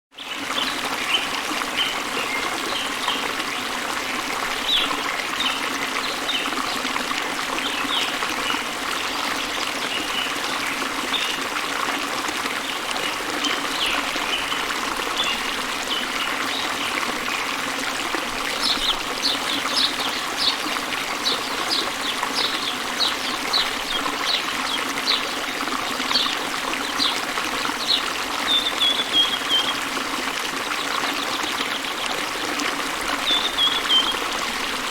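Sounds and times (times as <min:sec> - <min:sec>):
stream trickling: 0:00.1 - 0:34.9
small birds chirping: 0:18.5 - 0:25.4, 0:26.1 - 0:29.8, 0:33.2 - 0:34.3.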